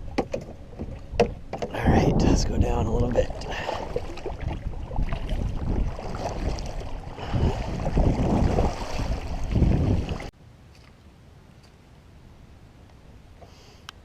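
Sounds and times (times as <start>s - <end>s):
wind buffeting microphone: 0.0s - 10.3s
water noise: 0.0s - 11.2s.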